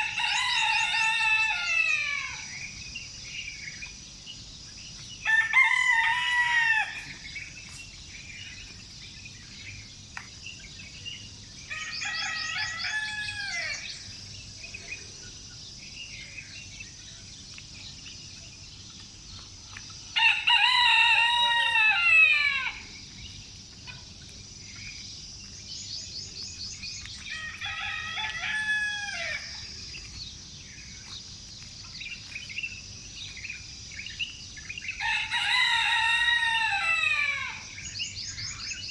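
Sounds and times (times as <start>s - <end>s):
roosters crowing: 0.0s - 2.5s, 5.2s - 7.2s, 11.7s - 14.0s, 20.2s - 22.9s, 27.3s - 29.6s, 35.0s - 37.8s
small birds chirping: 6.9s - 20.2s, 22.6s - 35.0s.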